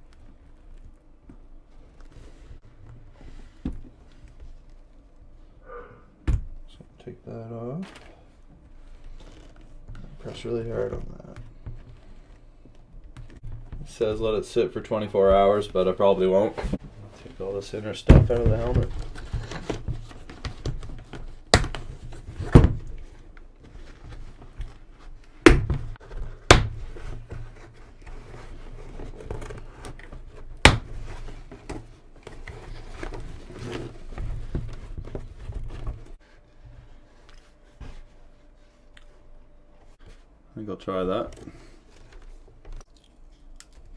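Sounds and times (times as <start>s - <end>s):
padding rustling and crinkling: 0.0s - 43.9s.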